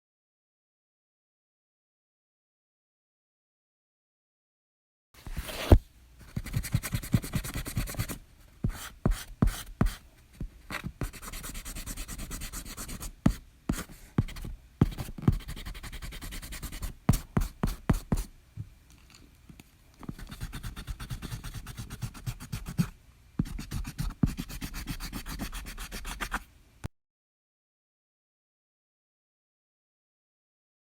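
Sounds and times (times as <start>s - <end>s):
eraser rubbing on paper: 5.3s - 10.0s, 20.1s - 26.4s.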